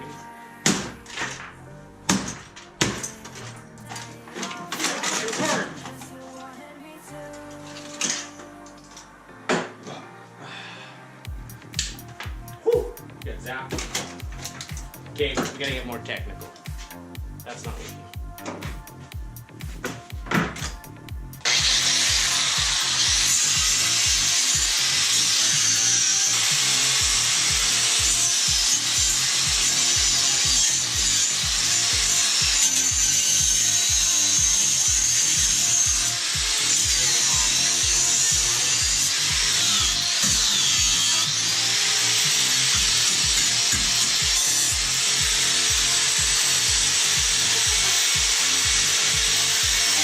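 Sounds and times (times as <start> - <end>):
music with thumping bass beat: 11.3 - 50.0
power tool cutting hiss: 21.4 - 50.0.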